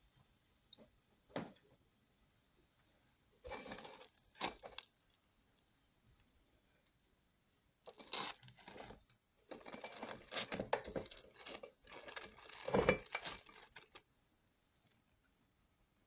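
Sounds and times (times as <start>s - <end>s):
crinkling and rustling: 3.4s - 4.9s, 7.8s - 14.1s.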